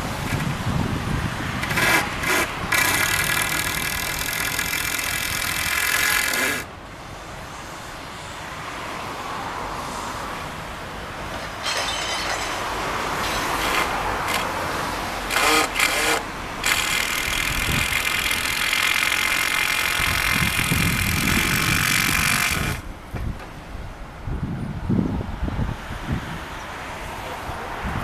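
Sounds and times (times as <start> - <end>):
long grinding scrape: 1.6 - 6.7, 15.2 - 22.8
debris crashing and clattering: 11.6 - 13.9.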